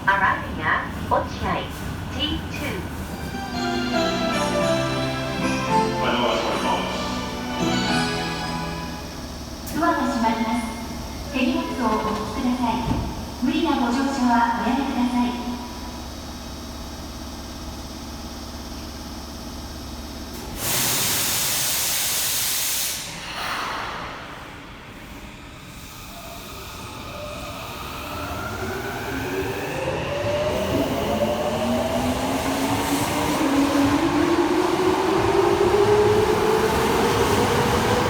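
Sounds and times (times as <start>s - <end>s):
hiss of air: 20.4s - 25.2s.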